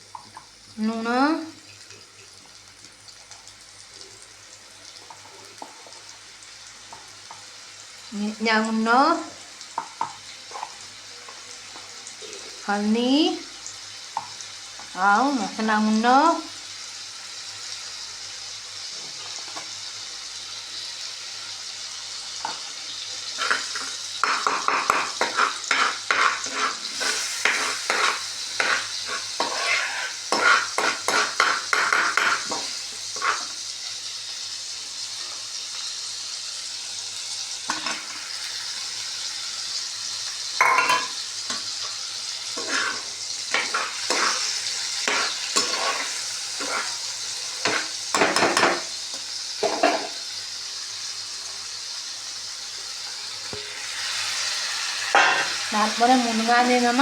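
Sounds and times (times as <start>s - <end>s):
food sizzling in oil: 0.0s - 57.0s
utensil scraping a pan: 23.4s - 33.6s, 42.6s - 48.8s.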